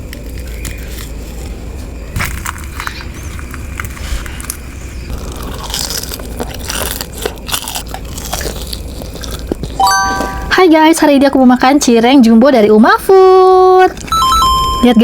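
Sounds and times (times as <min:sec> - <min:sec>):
crunchy chewing: 0:00.0 - 0:09.8.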